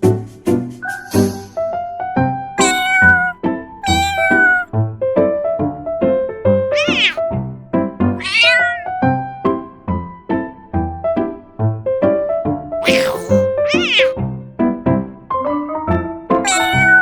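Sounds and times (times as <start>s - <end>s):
cat meowing: 2.6s - 4.7s, 6.7s - 7.2s, 8.2s - 9.0s, 12.8s - 14.2s, 16.4s - 17.0s.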